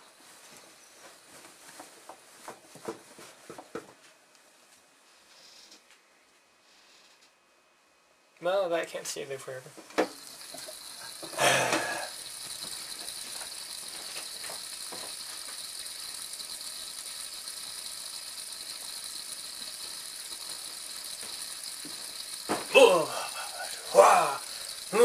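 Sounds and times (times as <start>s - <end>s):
sink hissing rattle: 10.0s - 25.0s.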